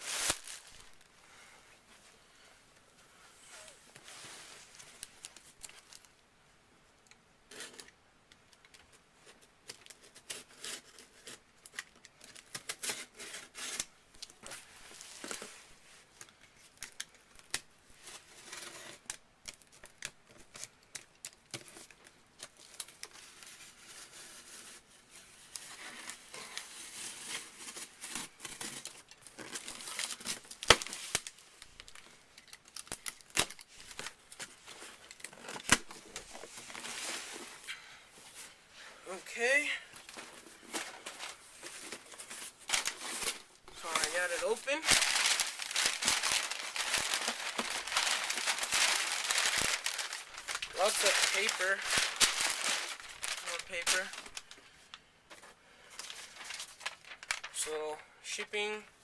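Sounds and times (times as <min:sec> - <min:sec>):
packing tape ripping: 0:00.0 - 0:01.0, 0:26.6 - 0:36.3, 0:41.7 - 0:54.6.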